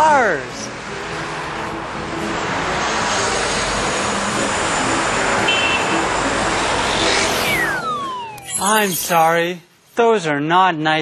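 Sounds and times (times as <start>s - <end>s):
cars passing: 0.0s - 8.4s
brief high-pitched tone: 5.4s - 9.6s.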